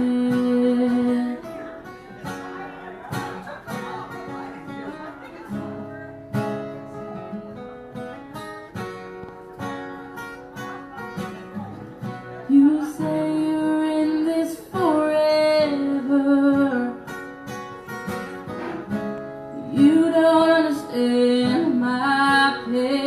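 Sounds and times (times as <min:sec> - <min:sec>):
acoustic guitar strumming chords: 0:00.0 - 0:23.0.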